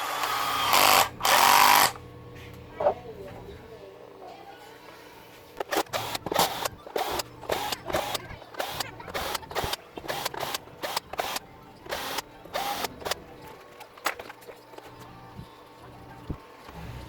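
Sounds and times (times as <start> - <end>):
mechanical clicking and rattling: 5.6 - 14.9.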